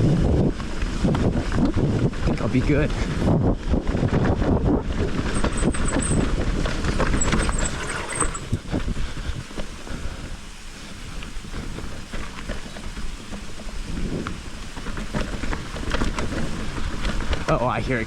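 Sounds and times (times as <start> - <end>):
bike tyre rumble: 0.0 - 18.0
wind on microphone: 0.0 - 18.0
faint high squeaks: 5.4 - 6.3, 7.1 - 8.6.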